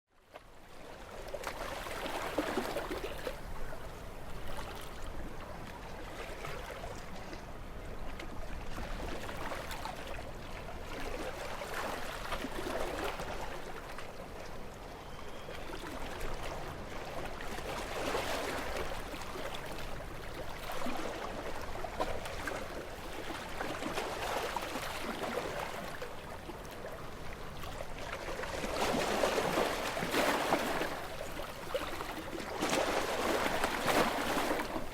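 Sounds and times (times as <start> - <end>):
sea waves breaking on beach: 1.3 - 5.0, 15.7 - 34.9.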